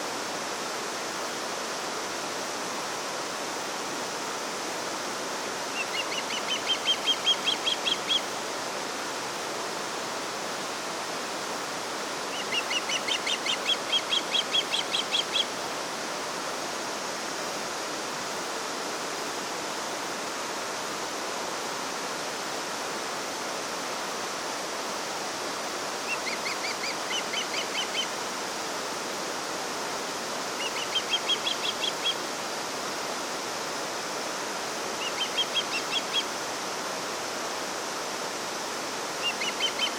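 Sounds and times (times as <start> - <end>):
running water rushing: 0.0 - 39.9
songbird singing: 5.7 - 8.4, 12.3 - 15.6, 26.1 - 28.2, 30.6 - 32.2, 35.0 - 36.4, 39.2 - 39.9.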